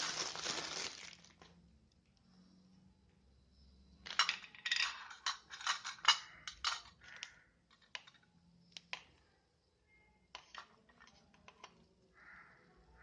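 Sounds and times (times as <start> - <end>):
small hard parts clicking: 4.0 - 9.1.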